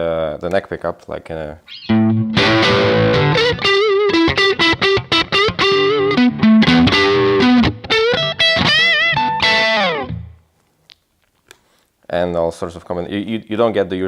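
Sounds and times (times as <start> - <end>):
electric guitar lead line: 1.7 - 10.4.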